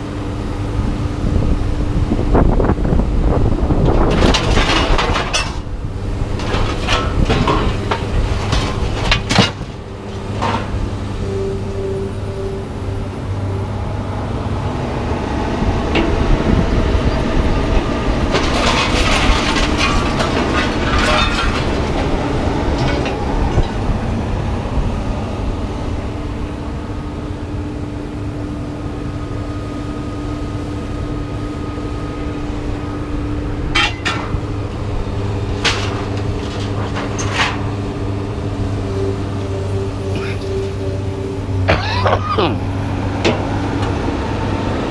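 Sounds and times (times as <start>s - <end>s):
vehicle engine running: 0.0s - 44.9s
scrap metal rattling: 3.8s - 11.4s, 17.8s - 23.9s, 33.7s - 38.3s.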